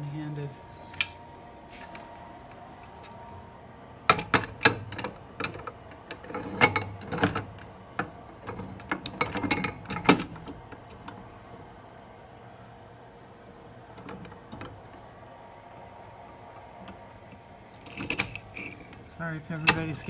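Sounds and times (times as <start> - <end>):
metal clanks and clicks of lever: 0.7 - 3.3, 4.1 - 11.1, 17.8 - 20.0.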